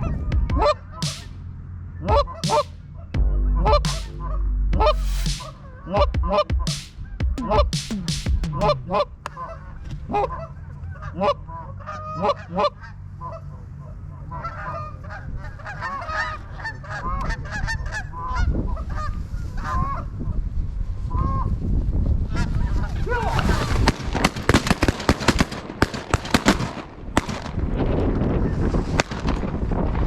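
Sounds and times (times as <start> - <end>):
low rumble: 2.0 - 10.4.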